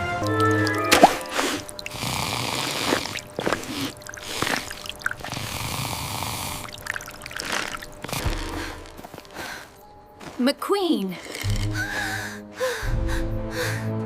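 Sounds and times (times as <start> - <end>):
watery hiss with drips and squelches: 1.1 - 8.4.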